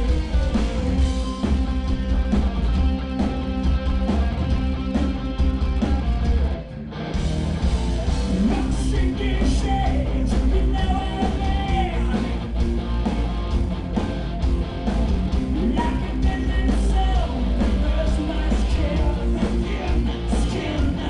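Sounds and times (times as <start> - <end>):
loud electric guitar: 0.0 - 21.0
person singing: 8.4 - 12.4, 15.6 - 21.0.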